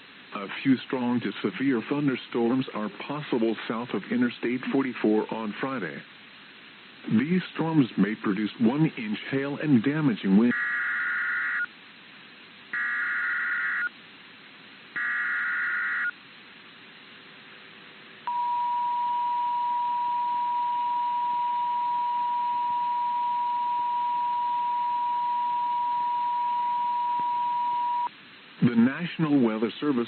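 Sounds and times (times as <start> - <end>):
electronic data burst warble: 12.8 - 13.9, 15.0 - 16.1.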